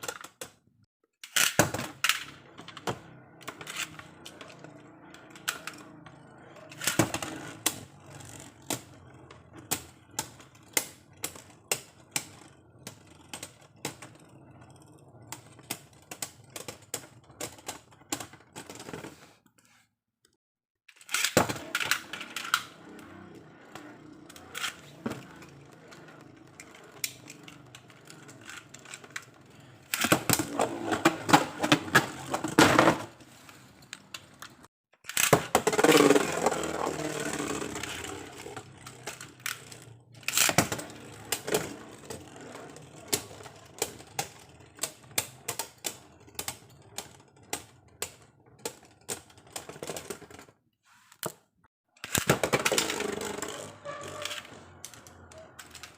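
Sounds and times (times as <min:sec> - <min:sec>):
plastic spinning tops clattering: 0:20.9 - 0:33.1, 0:34.1 - 0:50.5, 0:52.0 - 0:55.9.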